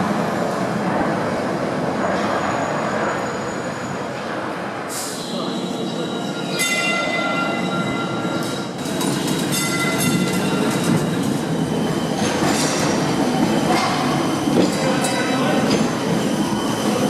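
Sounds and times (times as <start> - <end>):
tram rumbling on rails: 0.0 - 17.0.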